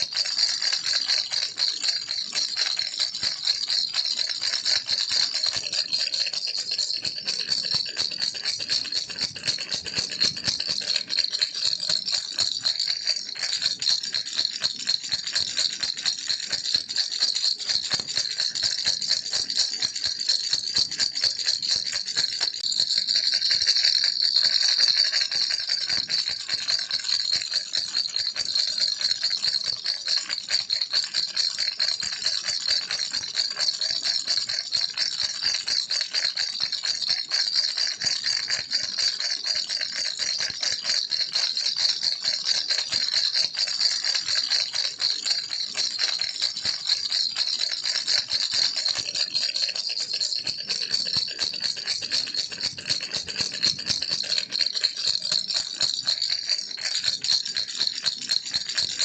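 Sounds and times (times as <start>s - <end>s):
plastic rattle shaken: 0.0s - 59.0s.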